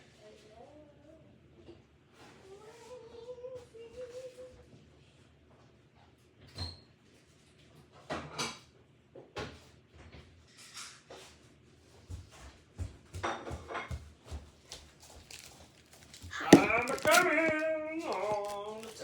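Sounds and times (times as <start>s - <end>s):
rustles and light knocks: 14.8s - 19.0s
soft thumps: 15.2s - 18.9s.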